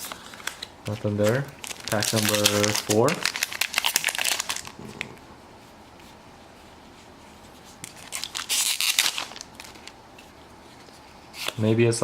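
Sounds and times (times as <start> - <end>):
foil wrapper rustling: 0.0 - 4.8, 7.6 - 10.0
foil wrapper tearing open: 0.0 - 4.8, 7.8 - 10.0.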